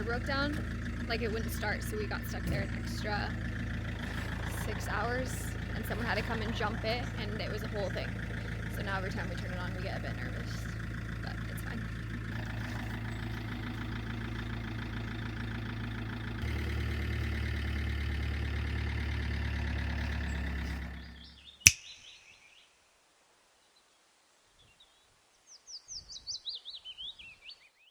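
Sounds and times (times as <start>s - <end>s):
van engine droning: 0.0s - 21.6s
bird singing falling chirps: 20.0s - 22.8s
sharp click: 21.7s - 22.0s.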